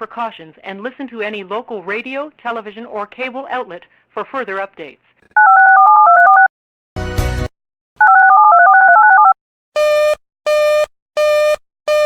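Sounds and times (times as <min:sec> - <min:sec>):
telephone touch tones: 0:05.4 - 0:06.5, 0:08.0 - 0:09.4.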